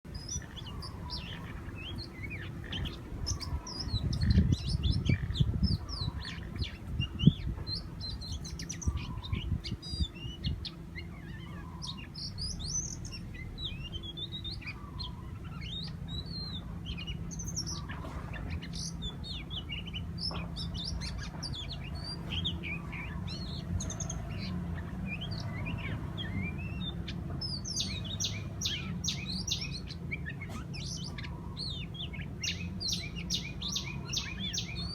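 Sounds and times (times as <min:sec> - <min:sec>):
birds chirping: 0:00.0 - 0:34.9
loud low rumbling and bumping: 0:00.1 - 0:10.6.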